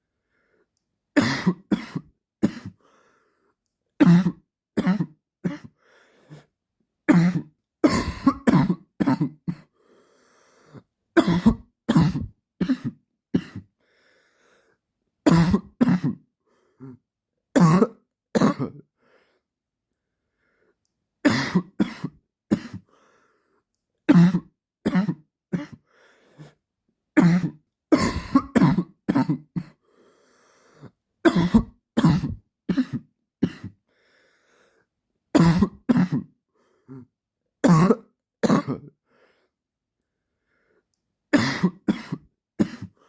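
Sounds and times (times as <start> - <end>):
man coughing: 7.1 - 9.7, 11.2 - 13.7, 15.3 - 16.2, 27.2 - 29.8, 31.3 - 33.8, 35.4 - 36.3, 37.6 - 38.9, 41.4 - 43.0.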